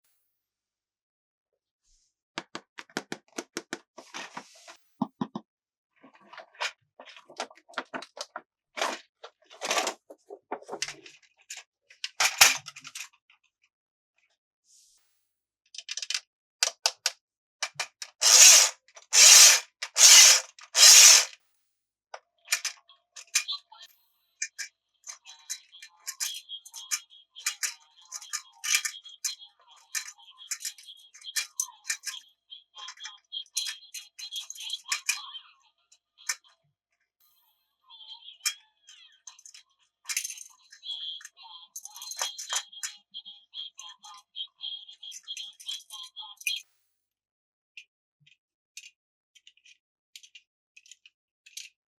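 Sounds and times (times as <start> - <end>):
plastic toy pieces clicking: 15.8 - 21.4
loud rasping strokes: 18.2 - 21.3.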